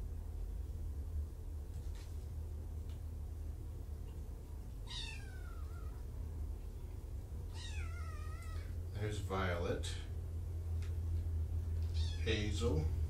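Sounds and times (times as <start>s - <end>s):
steady low hum: 0.0s - 13.0s
cat meowing: 4.8s - 6.0s, 7.5s - 8.8s, 11.8s - 12.4s.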